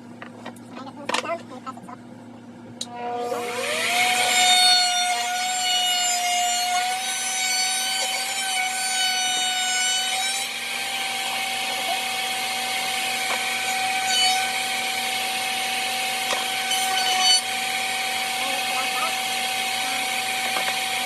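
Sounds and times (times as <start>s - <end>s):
router motor whine: 2.8s - 21.0s
router bit cutting wood: 2.9s - 21.0s.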